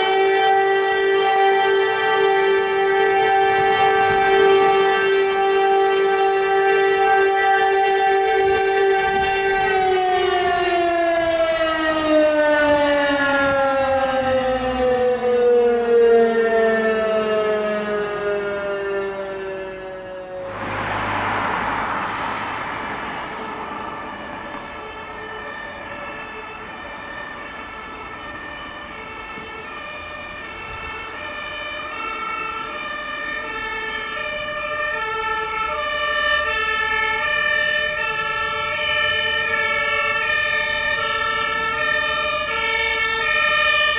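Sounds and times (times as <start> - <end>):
two-tone emergency siren: 0.0 - 43.9
alarm siren winding down: 20.4 - 29.4.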